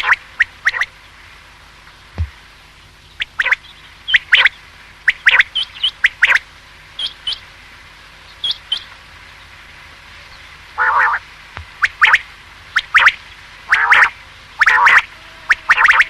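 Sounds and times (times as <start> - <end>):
quail calling: 0.0 - 1.0, 3.1 - 7.5, 8.3 - 9.1, 10.1 - 16.0.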